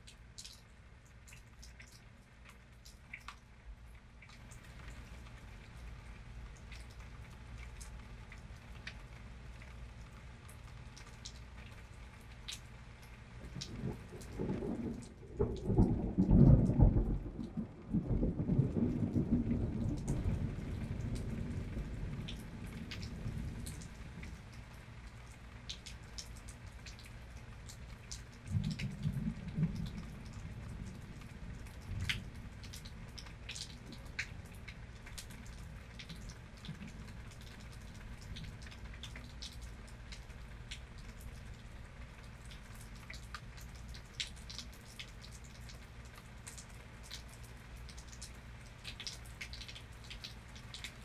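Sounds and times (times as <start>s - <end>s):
rain falling: 0.0s - 51.0s
scattered drips: 0.0s - 51.0s
thunder rumbling: 13.4s - 24.3s, 28.5s - 33.2s.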